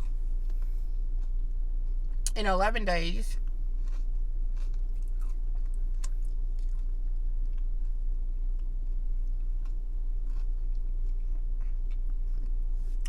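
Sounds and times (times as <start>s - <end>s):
low hum: 0.0s - 13.0s
person chewing food: 3.8s - 13.0s.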